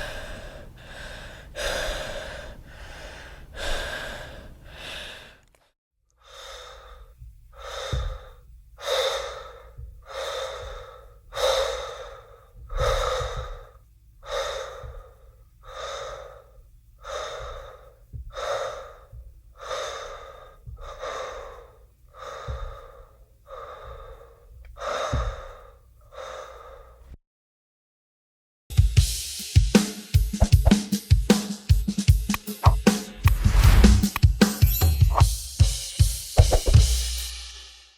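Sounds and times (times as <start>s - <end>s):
heavy laboured breathing: 0.0s - 27.2s
music with drum kit: 28.7s - 37.9s.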